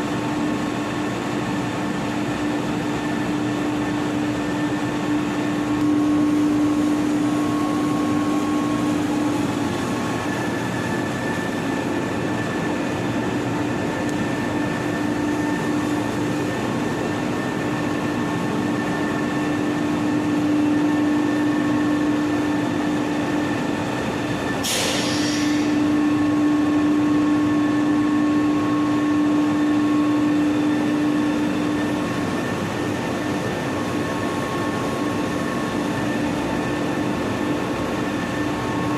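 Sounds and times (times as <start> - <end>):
floor-cleaning machine running: 0.0 - 38.9.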